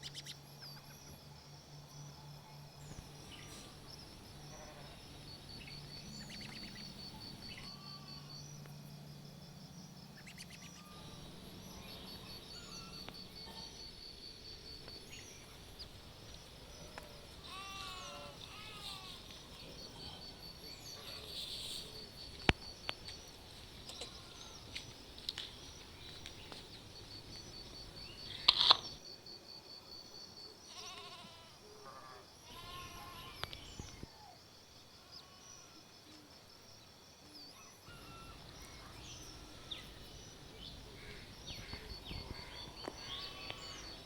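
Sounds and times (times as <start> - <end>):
insect trilling: 2.8 - 8.7, 10.0 - 29.0, 30.7 - 34.0, 37.9 - 44.0
cats meowing: 17.5 - 19.2.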